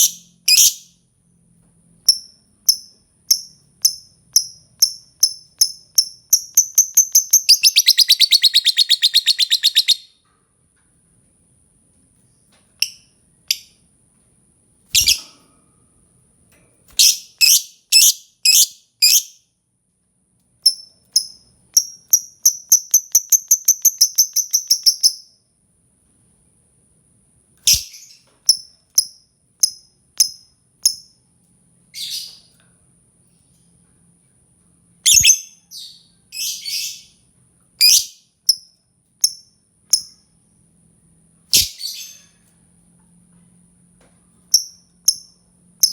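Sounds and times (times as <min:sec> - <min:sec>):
lovebird chirping: 0:00.0 - 0:00.9, 0:02.1 - 0:10.1, 0:15.0 - 0:15.2, 0:16.9 - 0:19.4, 0:20.6 - 0:25.3, 0:27.7 - 0:31.0, 0:32.0 - 0:32.4, 0:35.1 - 0:37.1, 0:37.8 - 0:38.6, 0:41.5 - 0:42.3, 0:44.5 - 0:45.9.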